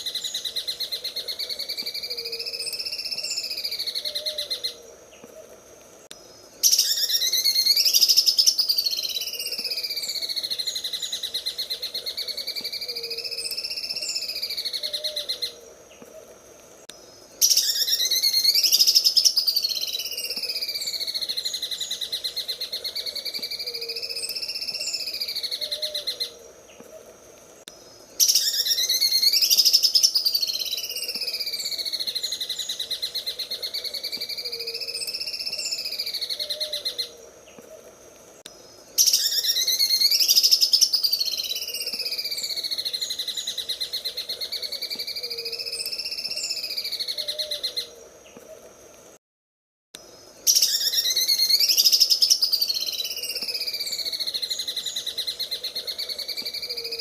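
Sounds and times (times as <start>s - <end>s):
bird singing rattling trill: 6.6s - 15.5s, 17.4s - 26.3s, 28.2s - 37.1s, 39.0s - 47.9s, 50.4s - 57.0s.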